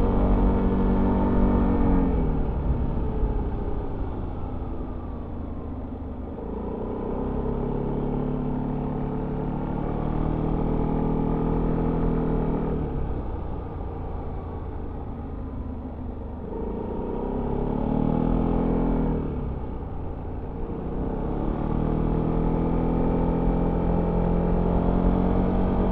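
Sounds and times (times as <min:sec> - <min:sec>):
steady low rumble: 0:00.0 - 0:09.7.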